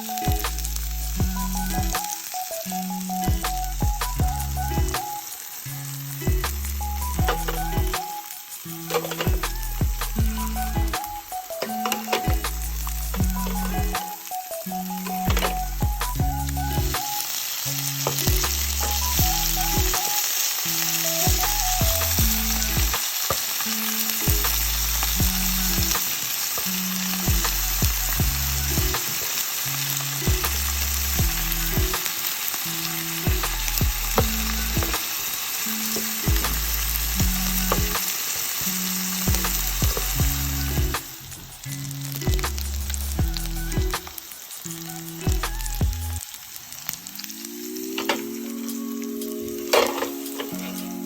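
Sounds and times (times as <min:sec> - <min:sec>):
background music with bass: 0:00.0 - 0:02.1, 0:02.7 - 0:08.0, 0:08.7 - 0:14.0, 0:14.7 - 0:17.0, 0:17.7 - 0:20.0, 0:20.7 - 0:23.0, 0:24.2 - 0:26.0, 0:26.7 - 0:29.0, 0:29.7 - 0:32.0, 0:32.7 - 0:35.0, 0:35.8 - 0:38.0, 0:38.6 - 0:46.2
meat sizzling on a grill: 0:00.0 - 0:51.0.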